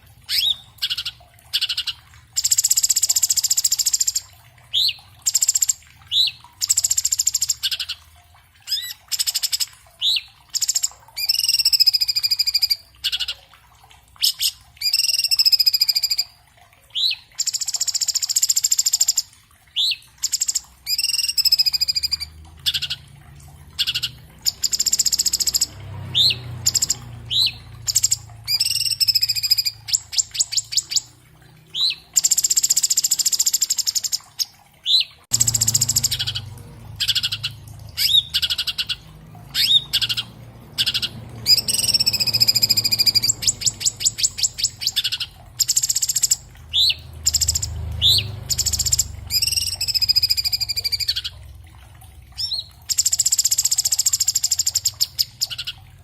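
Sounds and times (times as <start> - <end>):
bird singing fast varied song: 8.7 - 13.4, 14.3 - 16.3, 19.8 - 23.0, 23.8 - 31.1, 34.8 - 51.3.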